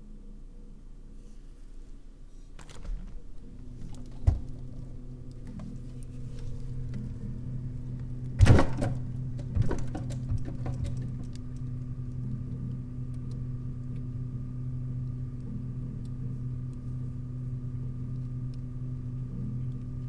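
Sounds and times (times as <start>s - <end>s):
refrigerator low hum: 0.0s - 20.0s
refrigerator sharp knocks: 8.4s - 10.8s.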